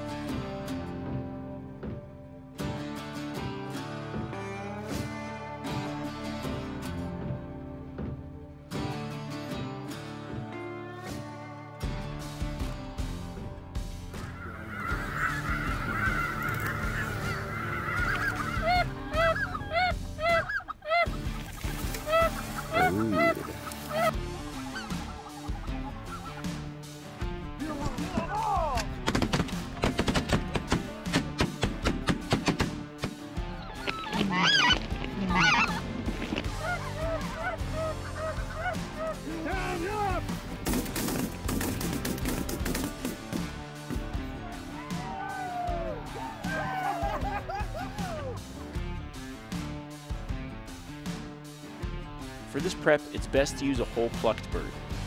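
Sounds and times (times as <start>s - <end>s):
background music: 0.0s - 55.0s
loud goose honks: 14.2s - 26.4s
geese chattering: 14.2s - 26.8s, 33.6s - 40.2s.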